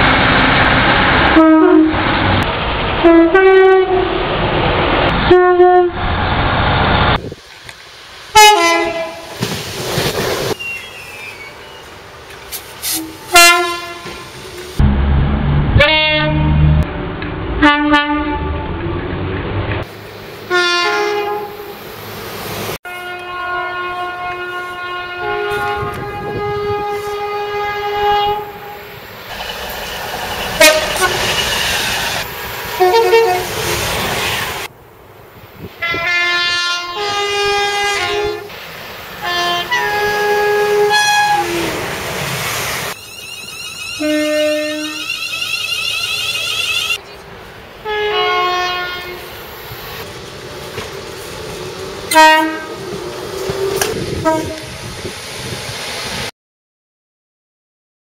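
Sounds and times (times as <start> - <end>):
passing train: 0.0 - 56.3
train two-tone horn: 1.3 - 2.2, 3.0 - 4.2, 5.2 - 6.0, 8.3 - 9.4, 12.8 - 14.7, 15.8 - 16.7, 17.6 - 18.7, 20.5 - 21.8, 22.8 - 28.9, 30.6 - 31.3, 32.8 - 33.6, 35.8 - 38.5, 39.2 - 41.8, 43.1 - 47.0, 47.8 - 49.3, 52.1 - 52.9, 53.6 - 54.8.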